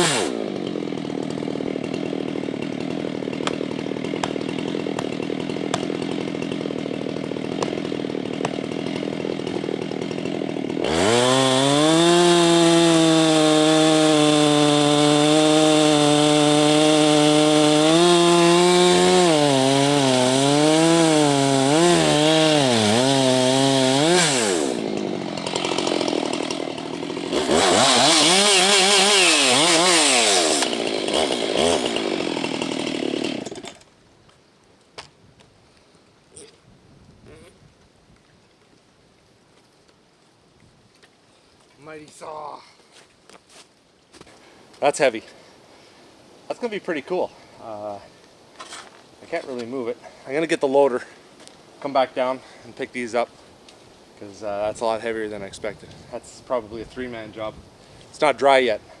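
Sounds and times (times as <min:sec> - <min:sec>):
chainsaw cutting wood: 0:00.0 - 0:33.9, 0:48.6 - 0:59.0.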